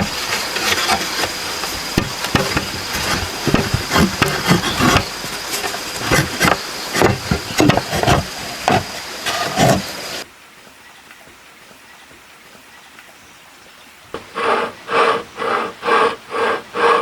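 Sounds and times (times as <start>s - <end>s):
sharp knocks and scrapes: 0.0s - 10.2s, 14.2s - 17.0s
steady hiss with high whine: 0.0s - 11.1s.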